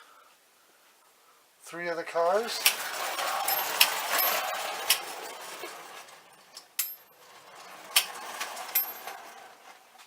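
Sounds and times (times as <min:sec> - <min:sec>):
clockwork motor whirring and clicking: 0:02.4 - 0:09.7.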